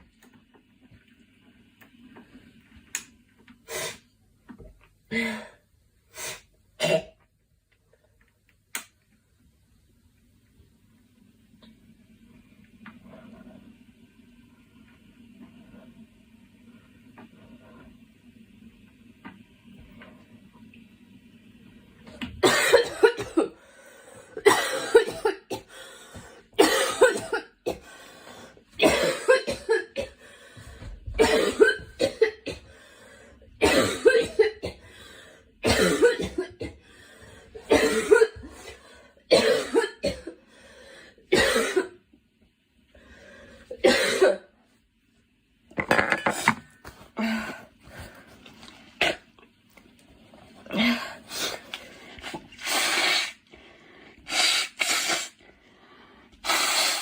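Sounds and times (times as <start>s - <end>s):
girl coughing: 6.8s - 7.1s, 22.4s - 23.6s, 24.4s - 25.7s, 26.6s - 27.8s, 28.8s - 30.2s, 31.2s - 32.6s, 33.6s - 34.8s, 35.6s - 36.8s, 37.7s - 38.4s, 39.3s - 40.4s, 41.3s - 42.0s, 43.8s - 44.5s.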